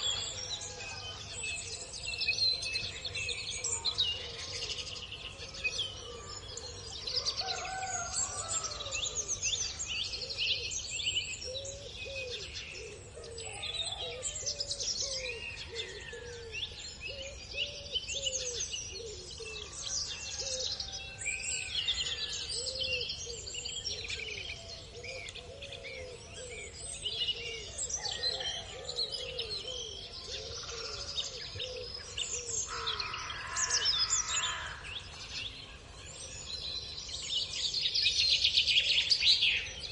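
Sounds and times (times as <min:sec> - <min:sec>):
small birds chirping: 0:00.0 - 0:00.5.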